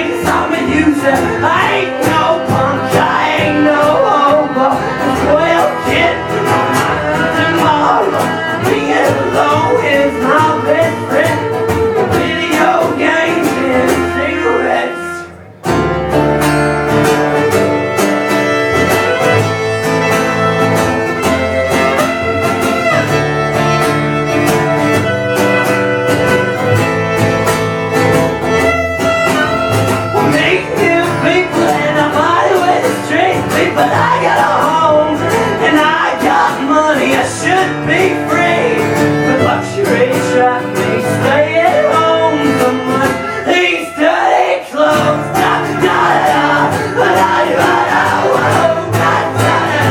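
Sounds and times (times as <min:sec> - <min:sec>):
live country band: 0:00.0 - 0:49.9
wavering fiddle-like lead: 0:00.6 - 0:32.9.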